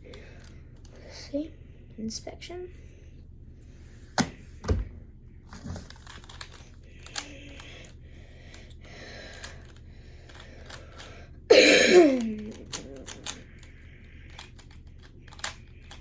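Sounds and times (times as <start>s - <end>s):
plastic puzzle clicking and rustling: 0.0s - 1.2s, 5.6s - 11.2s, 12.0s - 16.0s.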